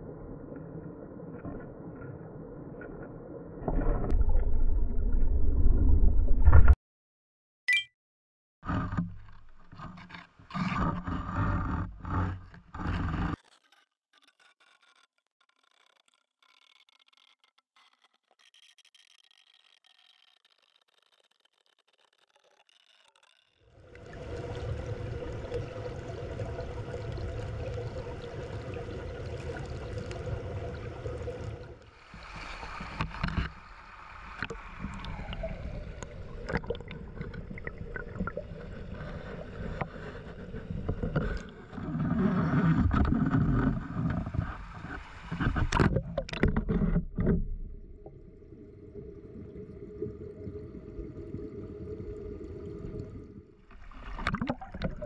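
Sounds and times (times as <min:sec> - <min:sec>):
mountain stream rushing and gurgling: 0:23.9 - 0:33.2.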